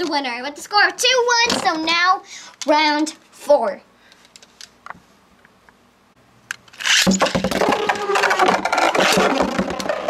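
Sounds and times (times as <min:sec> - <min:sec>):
spinning tops whirring and clashing: 0:06.8 - 0:10.0.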